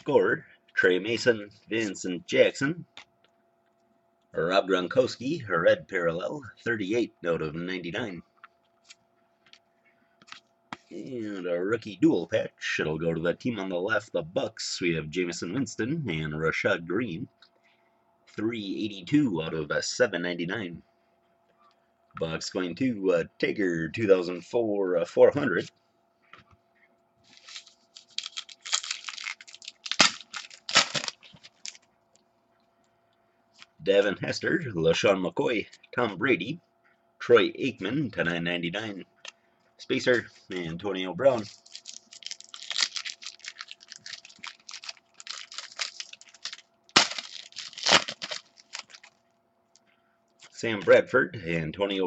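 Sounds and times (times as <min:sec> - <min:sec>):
foil pack crinkling and tearing: 0:27.3 - 0:31.9, 0:41.3 - 0:49.2.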